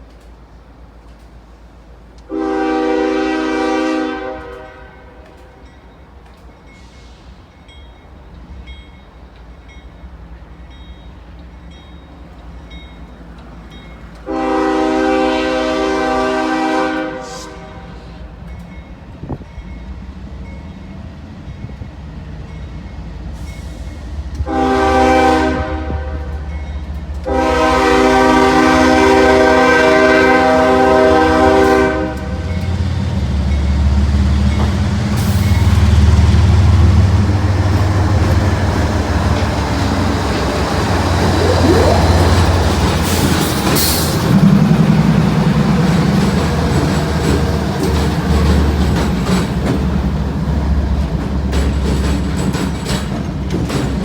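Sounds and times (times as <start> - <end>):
locomotive air horn blasts: 2.3 - 5.4, 14.2 - 18.2, 24.4 - 26.4, 27.2 - 32.4, 41.0 - 43.2.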